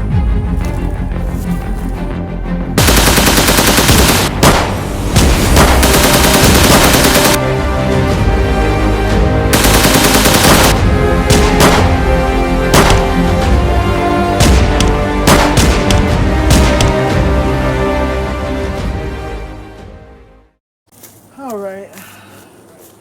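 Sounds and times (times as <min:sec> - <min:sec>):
background music: 0:00.0 - 0:20.6
rapid gunfire: 0:02.8 - 0:07.4, 0:09.6 - 0:12.0, 0:12.7 - 0:13.2, 0:14.4 - 0:17.0.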